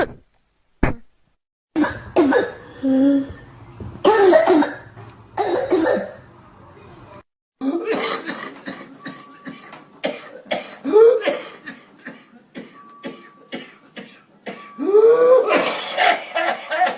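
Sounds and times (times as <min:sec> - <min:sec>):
person coughing: 0:01.8 - 0:03.3, 0:04.0 - 0:04.8, 0:05.4 - 0:06.2, 0:07.6 - 0:16.9.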